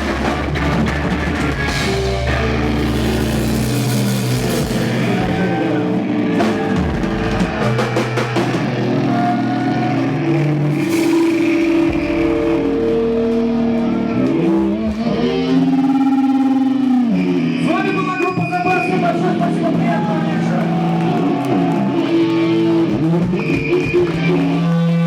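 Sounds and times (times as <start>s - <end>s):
live rock band playing: 0.0s - 17.7s.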